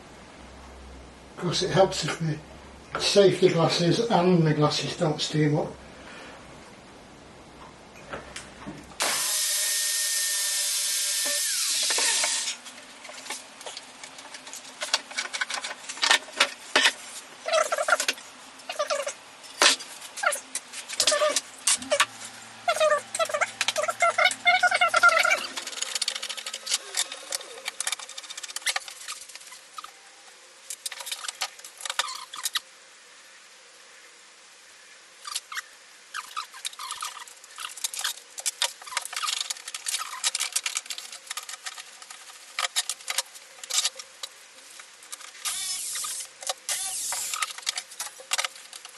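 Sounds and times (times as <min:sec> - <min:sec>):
power tool whining in wood: 0:09.0 - 0:12.6.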